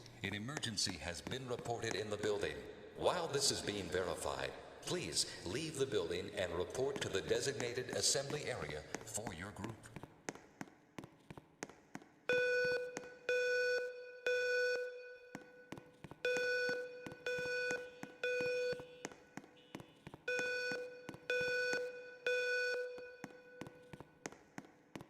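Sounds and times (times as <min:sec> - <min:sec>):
fire alarm buzzy beeps: 0:12.3 - 0:23.9.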